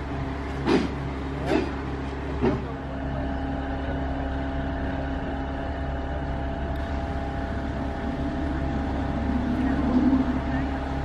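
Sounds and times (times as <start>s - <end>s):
motor humming: 6.7s - 11.0s.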